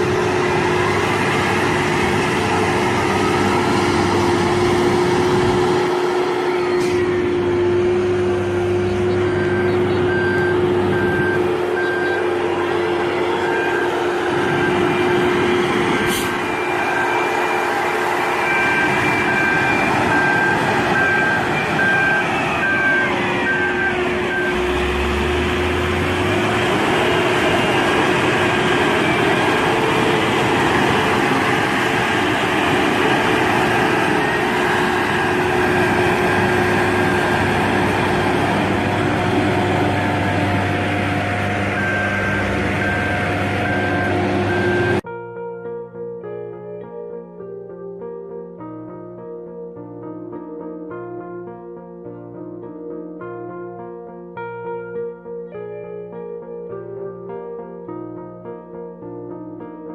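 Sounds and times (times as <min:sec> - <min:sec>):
heavy construction machinery running: 0:00.0 - 0:45.1
reversing alarm beeping: 0:00.0 - 0:45.1.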